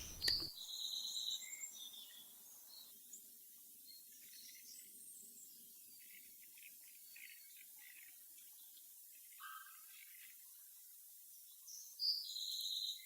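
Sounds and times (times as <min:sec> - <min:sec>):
faint birdsong: 0:00.0 - 0:13.0.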